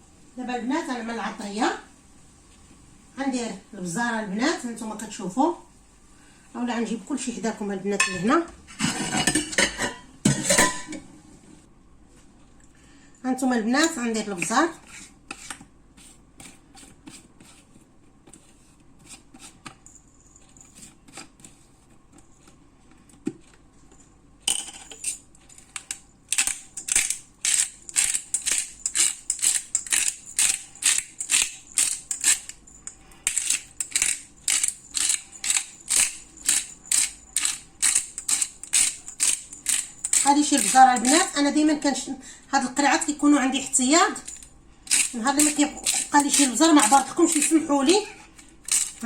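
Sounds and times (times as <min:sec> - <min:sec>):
pepper grinder grinding: 0:25.0 - 0:41.6, 0:44.2 - 0:49.0.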